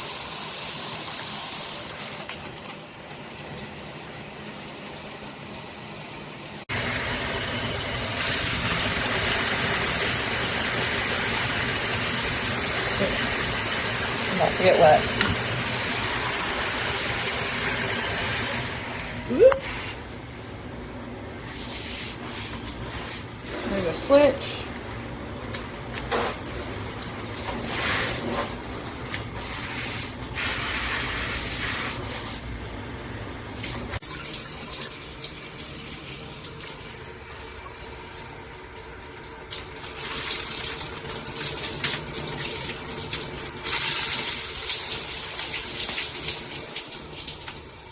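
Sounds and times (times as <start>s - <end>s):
water spraying from shower head: 7.1s - 20.0s, 26.0s - 32.5s, 39.6s - 47.7s.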